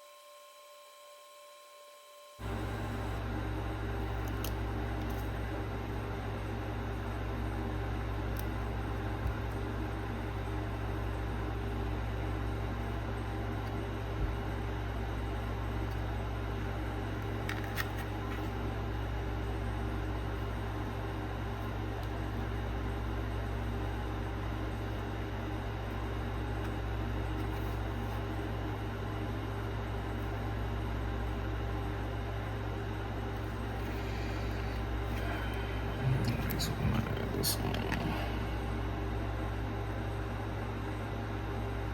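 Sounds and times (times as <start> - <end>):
low mechanical hum: 0.0 - 41.9.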